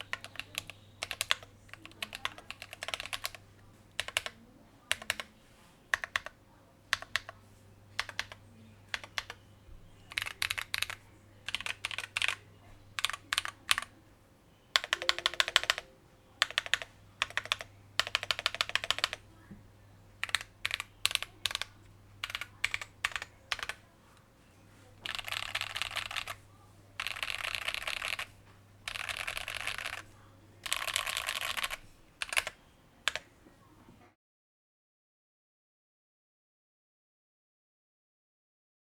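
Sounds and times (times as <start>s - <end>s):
mechanical keyboard typing: 0.0s - 5.3s, 5.9s - 7.4s, 8.0s - 9.4s, 10.0s - 12.4s, 13.0s - 13.9s, 14.7s - 19.2s, 20.2s - 23.8s, 25.0s - 26.4s, 27.0s - 33.3s
faint low hum: 0.0s - 34.1s.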